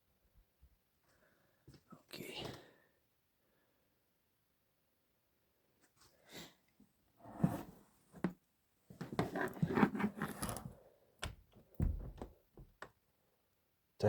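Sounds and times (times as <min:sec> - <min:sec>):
handling knocks and scrapes: 0:07.3 - 0:10.8
dull thump: 0:11.2 - 0:12.8.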